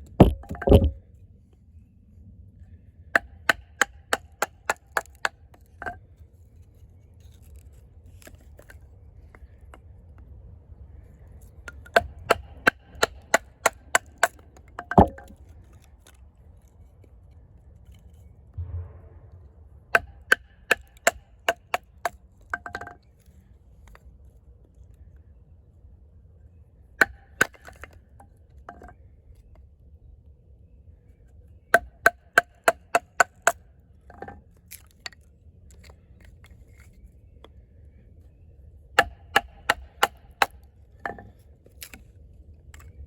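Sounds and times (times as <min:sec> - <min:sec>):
baton striking knife spine: 0:00.2 - 0:01.0.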